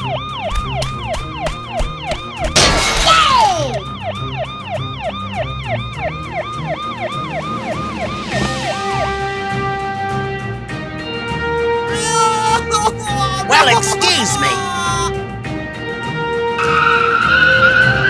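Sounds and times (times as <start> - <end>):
police siren yelping: 0.0 - 9.2, 16.6 - 18.0.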